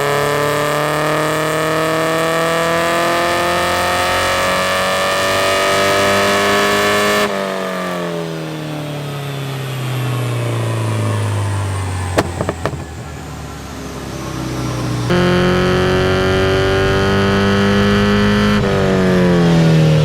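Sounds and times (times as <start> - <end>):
car engine revving and winding down: 0.0 - 20.0
exhaust backfire pops: 12.0 - 13.6.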